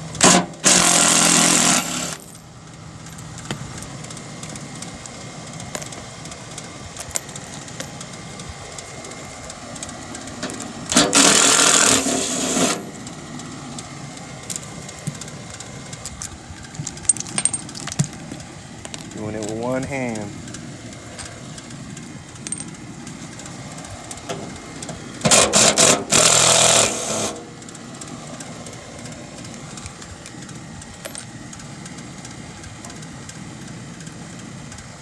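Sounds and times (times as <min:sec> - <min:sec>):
power driver running: 0:00.0 - 0:35.0.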